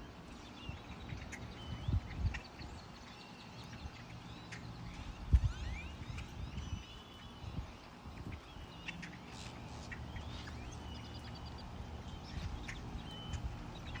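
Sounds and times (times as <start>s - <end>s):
birds chirping and calling: 0.0s - 14.0s.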